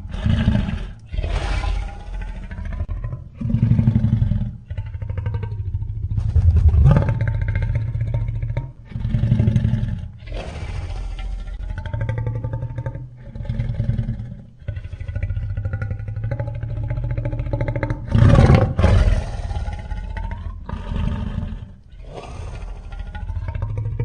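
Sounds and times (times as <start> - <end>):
monster roars and growls: 1.1 - 2.4, 6.2 - 7.8.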